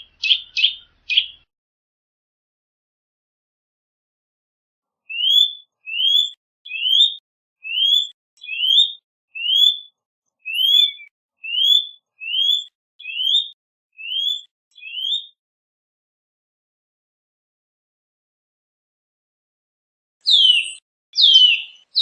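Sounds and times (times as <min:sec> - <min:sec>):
bird whistling rising notes: 0:05.1 - 0:09.9, 0:10.5 - 0:15.3, 0:20.2 - 0:22.0.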